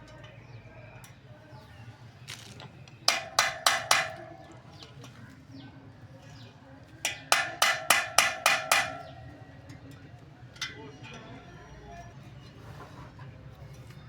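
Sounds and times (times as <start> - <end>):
hammer striking metal: 3.1 - 4.6, 7.1 - 9.3.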